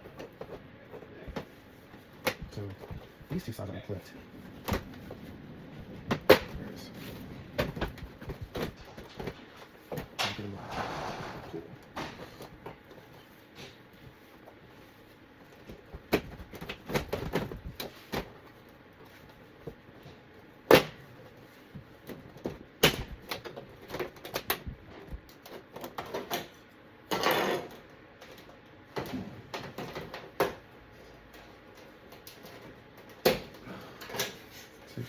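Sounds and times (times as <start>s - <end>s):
plastic scrape: 10.5s - 11.7s.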